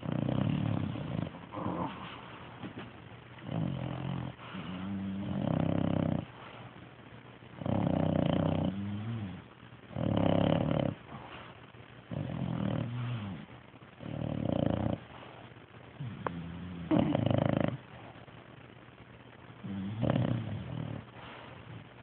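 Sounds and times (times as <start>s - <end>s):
loud snoring: 0.0s - 2.2s, 3.4s - 6.3s, 7.6s - 11.0s, 12.1s - 15.0s, 16.0s - 17.8s, 19.6s - 21.0s
soft breathing: 4.3s - 5.0s, 6.2s - 7.0s, 11.0s - 11.8s, 15.0s - 16.9s, 21.0s - 22.0s.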